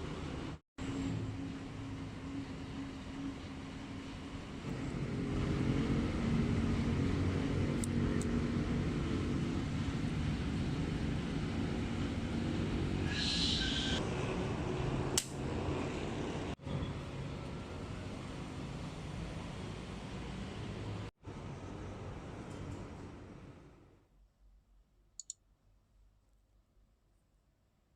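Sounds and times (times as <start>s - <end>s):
sharp click: 25.2s - 25.4s.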